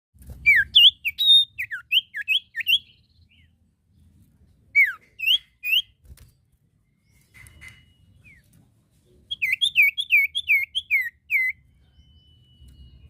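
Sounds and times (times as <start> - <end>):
bird singing whistled notes: 0.4 - 3.6, 4.7 - 6.0, 9.3 - 13.0.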